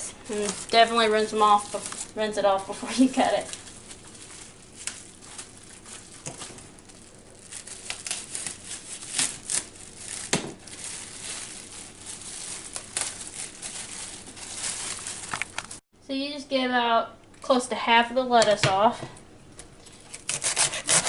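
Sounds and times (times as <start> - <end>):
lettuce leaves tearing: 0.3 - 15.8, 19.8 - 21.0.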